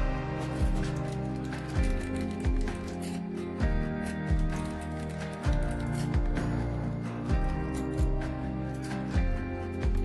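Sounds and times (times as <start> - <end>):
instrumental music with beat: 0.0 - 10.0.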